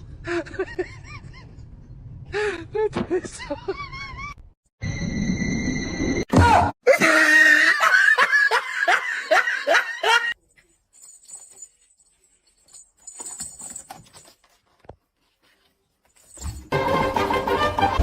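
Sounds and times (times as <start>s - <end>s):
person laughing hard: 6.9s - 10.4s.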